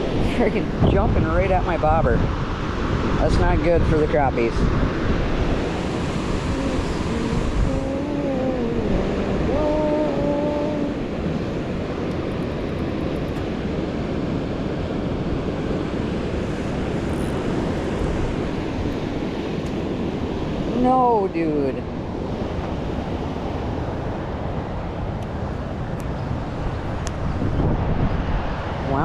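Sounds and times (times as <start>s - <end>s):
wavering voice-like tone: 6.3s - 11.3s.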